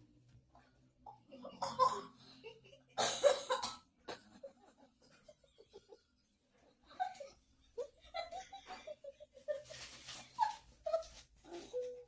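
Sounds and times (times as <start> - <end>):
person coughing: 1.6 - 2.3, 3.0 - 4.2.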